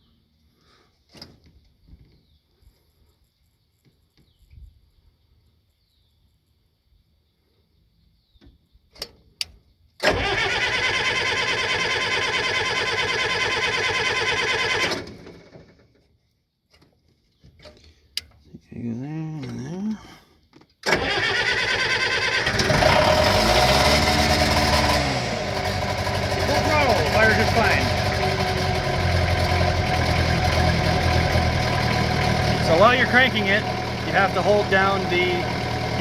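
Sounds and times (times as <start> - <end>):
diesel engine starter cranking: 10.0 - 16.0, 20.8 - 36.0.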